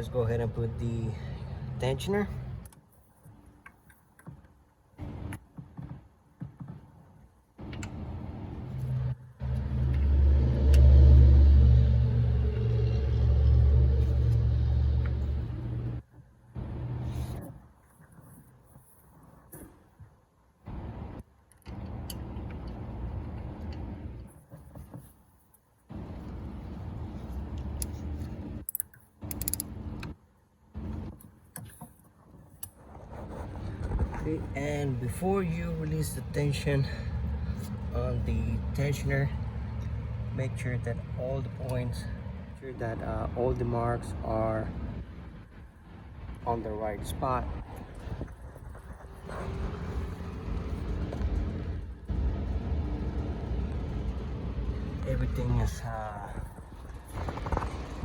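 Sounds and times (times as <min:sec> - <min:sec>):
low machine rumble and hum: 0:07.6 - 0:17.4, 0:32.9 - 0:58.0
parts clicking and rustling: 0:27.2 - 0:30.2.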